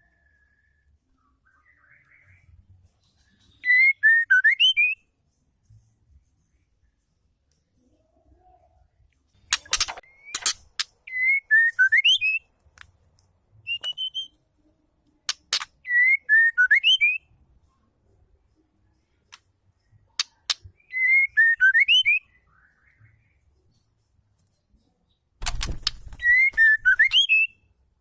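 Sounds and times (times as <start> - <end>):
bird whistled phrase: 3.6 - 5.0, 13.7 - 14.3, 20.8 - 23.0, 26.2 - 27.5
bird ticking clicks: 25.4 - 27.2.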